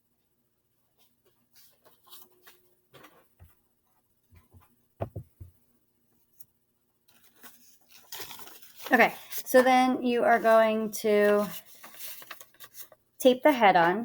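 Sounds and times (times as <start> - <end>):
paper rustling: 1.0 - 3.4, 7.1 - 13.1
low knocks: 5.0 - 5.6.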